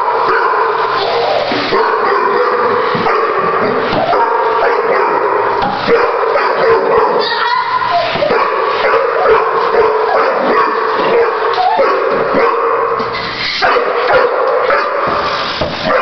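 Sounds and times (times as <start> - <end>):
dog barking and yipping: 1.7 - 3.4, 4.0 - 13.0, 13.6 - 15.0.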